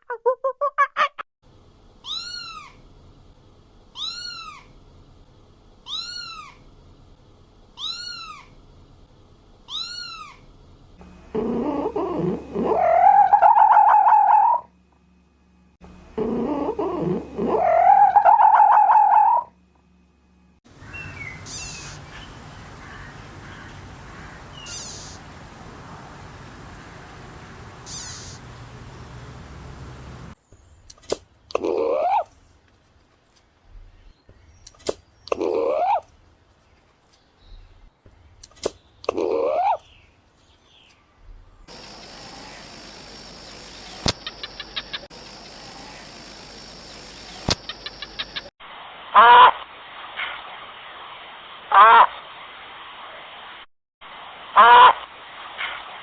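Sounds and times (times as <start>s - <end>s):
long rising animal calls: 11.3s - 14.7s, 16.2s - 19.5s.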